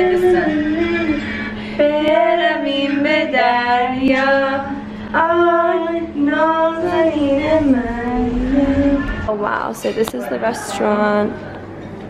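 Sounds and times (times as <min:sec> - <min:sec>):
woman singing long notes: 0:00.0 - 0:09.4
low hum: 0:00.0 - 0:09.6.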